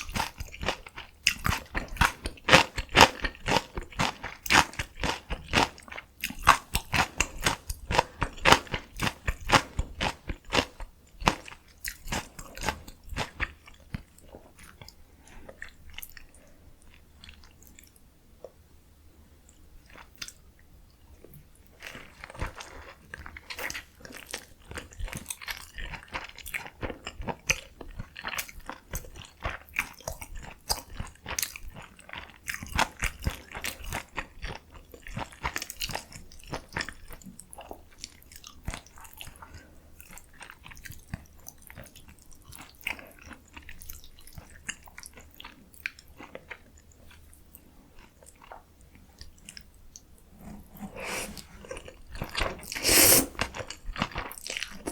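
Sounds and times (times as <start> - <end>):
wet mouth sounds: 50.2 - 53.8, 54.4 - 54.9.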